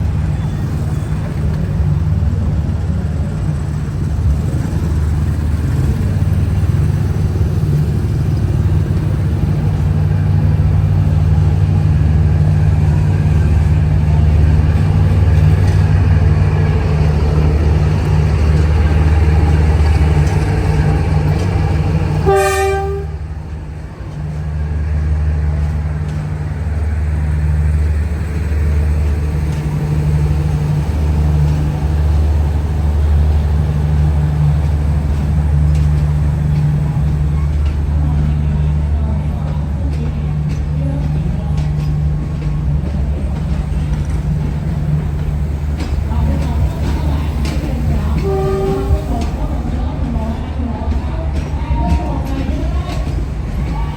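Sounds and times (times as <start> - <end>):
locomotive engine droning: 0.0 - 53.9
locomotive horn blast: 22.0 - 23.4, 47.4 - 49.4.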